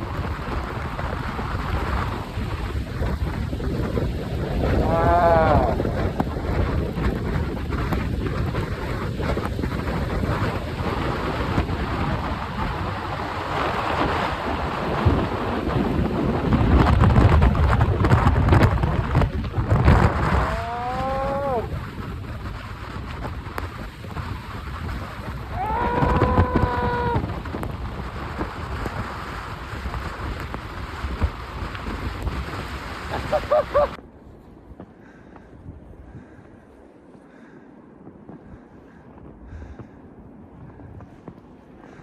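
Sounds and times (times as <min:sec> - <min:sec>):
wind buffeting microphone: 0:00.0 - 0:42.0
short falling cry: 0:04.8 - 0:05.8, 0:20.3 - 0:21.7, 0:25.5 - 0:27.3, 0:33.2 - 0:34.0.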